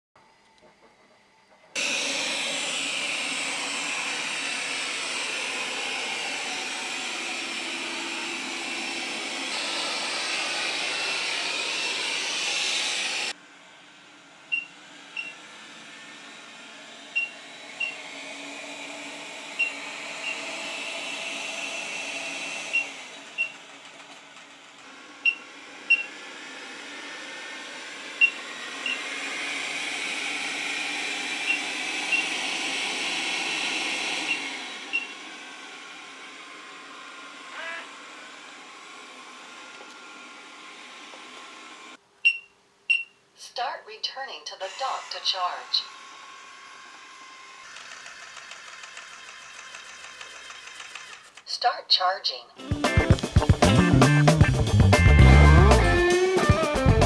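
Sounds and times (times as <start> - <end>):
robot vacuum hissing: 1.8 - 13.4, 14.7 - 23.8, 24.9 - 42.0, 44.6 - 48.9.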